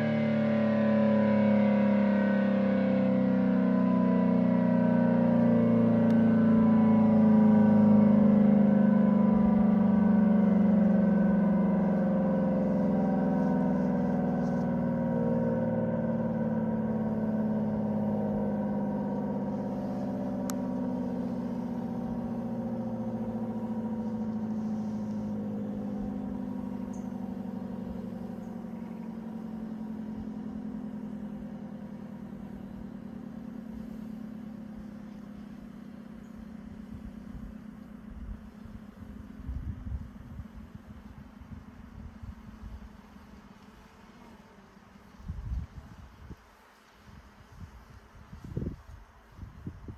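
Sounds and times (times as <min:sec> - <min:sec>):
siren winding down: 0:00.0 - 0:45.3.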